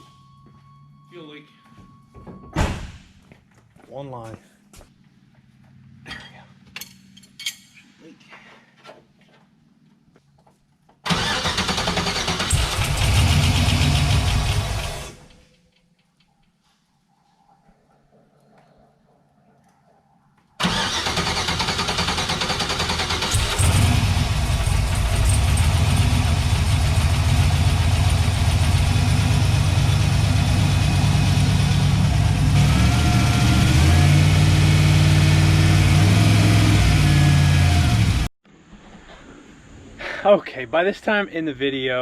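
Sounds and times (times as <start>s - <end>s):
engine cranking on starter: 11.1s - 15.5s, 20.6s - 30.1s
engine running at fast idle: 11.2s - 15.4s, 20.6s - 35.0s.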